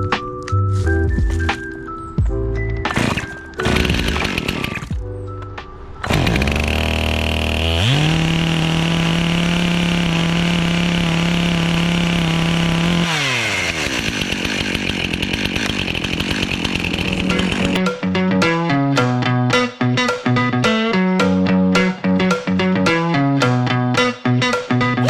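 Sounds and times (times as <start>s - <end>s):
chainsaw idling and revving: 2.9s - 5.0s, 6.0s - 17.8s.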